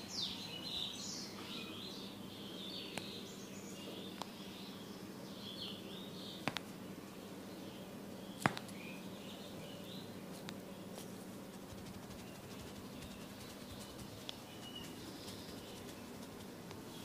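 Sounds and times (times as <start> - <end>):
birds chirping: 0.0 - 17.0
low hum: 11.0 - 17.0
faint ticks: 12.3 - 16.8.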